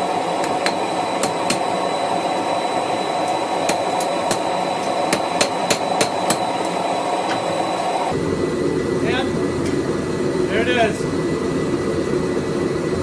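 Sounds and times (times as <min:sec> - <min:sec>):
hammer striking hot steel: 0:00.0 - 0:08.1
forge running: 0:00.0 - 0:13.0.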